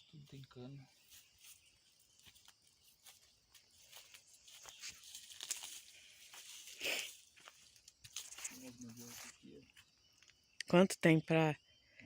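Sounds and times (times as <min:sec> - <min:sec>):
footsteps crackling in dry vegetation: 0:01.0 - 0:09.4.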